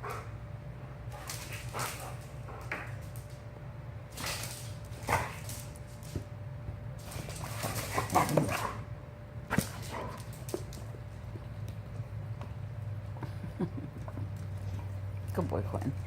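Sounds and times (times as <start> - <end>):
steady low hum: 0.0 - 16.0
dogs scuffling: 1.1 - 3.5, 4.1 - 6.4, 7.0 - 12.7.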